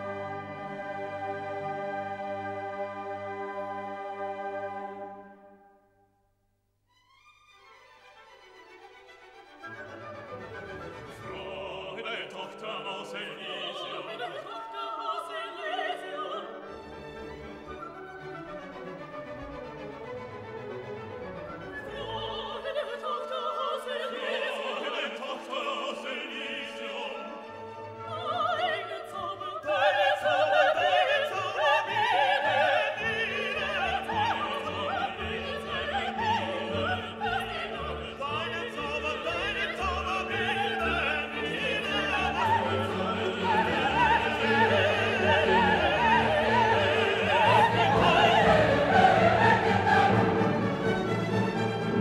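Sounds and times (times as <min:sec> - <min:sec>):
orchestra playing: 0:00.0 - 0:05.5, 0:07.4 - 0:14.2, 0:16.1 - 0:22.8, 0:31.4 - 0:52.0
operatic singing voice: 0:11.1 - 0:16.6, 0:21.8 - 0:51.2.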